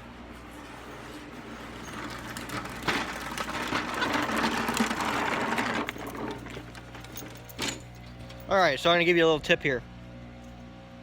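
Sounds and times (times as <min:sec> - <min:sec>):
lawnmower rattling over ground: 0:00.6 - 0:09.0.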